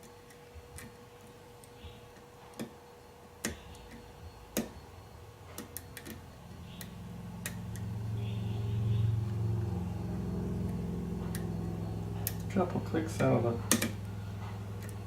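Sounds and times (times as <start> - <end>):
lock pins clicking: 5.5 - 6.2, 13.6 - 14.1.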